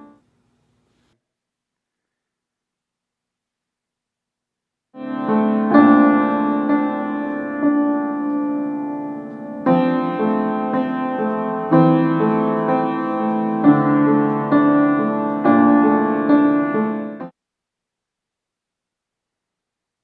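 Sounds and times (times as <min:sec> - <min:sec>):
slow piano piece: 0:00.0 - 0:00.2, 0:05.0 - 0:17.3.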